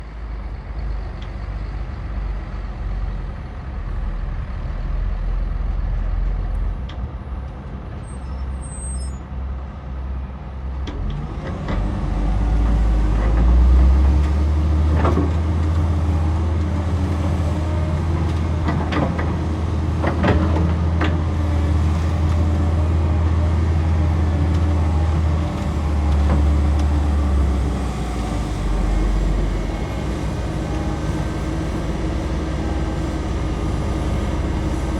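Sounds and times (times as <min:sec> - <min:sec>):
excavator diesel engine: 0:00.0 - 0:08.0, 0:09.2 - 0:34.9.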